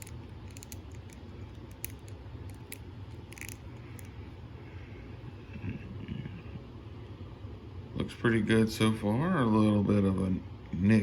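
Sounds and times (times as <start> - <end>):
plastic clicks and crinkles: 0.0 - 4.1
low steady hum: 0.0 - 11.0.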